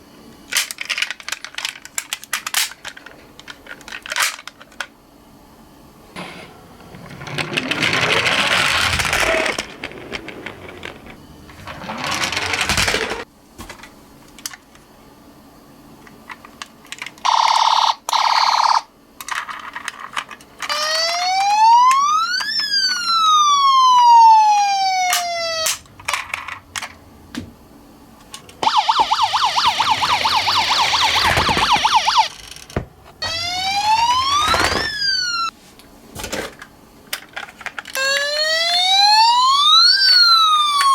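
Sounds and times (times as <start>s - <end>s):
toy cars clattering down a slope: 7.0s - 13.2s
toy electronic sirens wailing: 17.2s - 18.9s, 20.7s - 25.8s, 28.6s - 32.4s, 33.2s - 35.5s, 37.9s - 40.9s.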